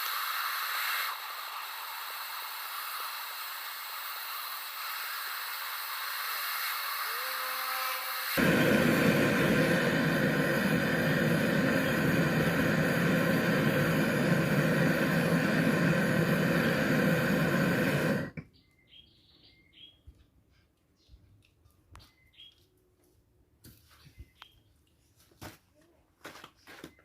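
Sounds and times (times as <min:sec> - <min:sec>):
loud steady hissing rush: 0:00.0 - 0:18.4
faint bird chirps: 0:18.4 - 0:20.2.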